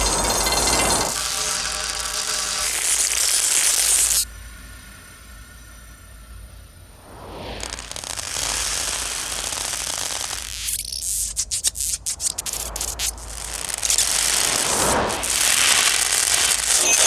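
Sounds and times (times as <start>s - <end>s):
glitchy electronic hissing rush: 0.0s - 17.0s.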